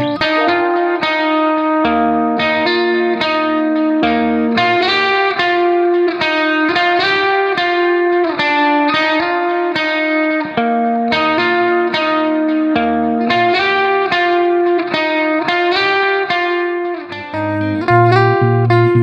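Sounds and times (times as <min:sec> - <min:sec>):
plucked guitar melody: 0:00.0 - 0:19.0
low bass notes: 0:17.3 - 0:19.0.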